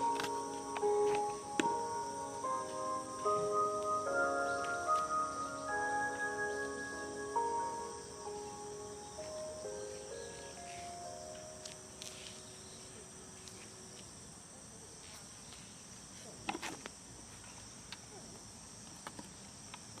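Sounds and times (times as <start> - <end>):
loudspeaker chime: 0.0 - 9.0
insects chirping: 0.0 - 20.0.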